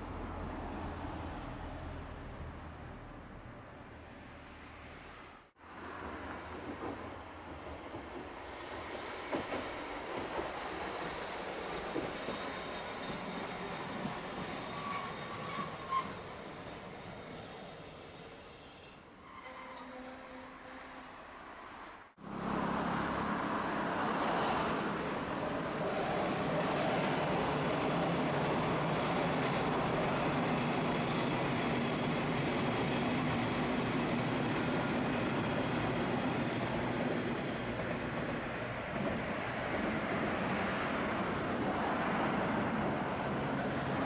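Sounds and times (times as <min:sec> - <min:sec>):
train rumbling by: 0:22.3 - 0:44.0.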